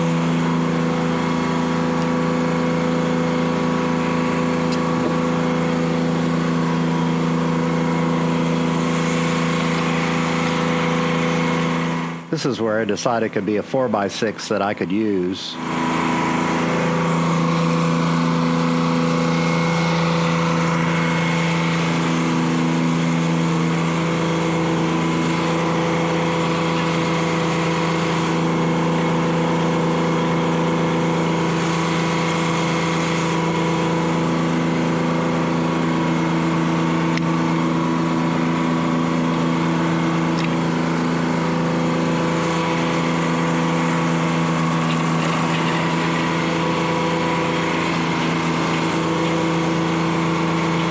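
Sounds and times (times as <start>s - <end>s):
diesel engine running steadily: 0.0s - 50.9s.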